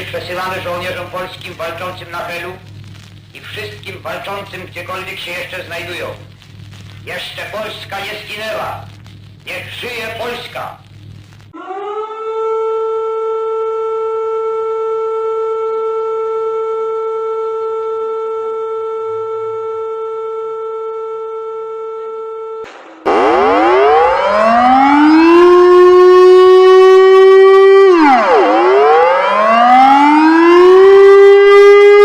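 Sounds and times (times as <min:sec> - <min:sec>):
siren steady tone: 0:11.5 - 0:32.0
siren wailing: 0:11.5 - 0:32.0.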